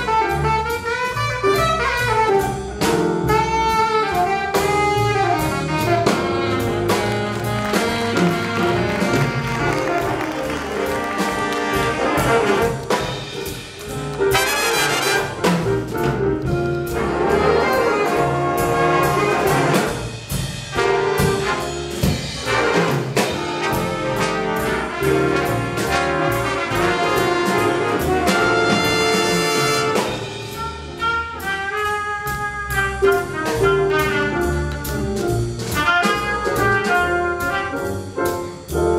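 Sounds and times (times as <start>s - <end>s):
jazz big band playing: 0.0s - 38.9s.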